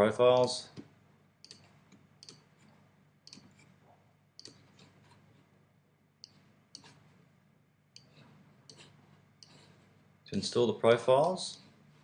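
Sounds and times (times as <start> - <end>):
computer mouse clicks: 0.4 - 2.5, 3.2 - 3.7, 4.4 - 5.2, 6.2 - 7.0, 8.0 - 9.6.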